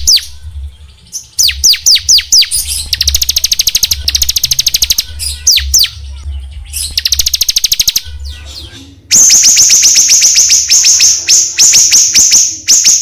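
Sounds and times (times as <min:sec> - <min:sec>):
steady low hum: 0:00.0 - 0:12.7
loud different bird trill: 0:00.0 - 0:13.0
songbird trilling: 0:00.0 - 0:13.0
bird whistling downward notes: 0:06.8 - 0:13.0.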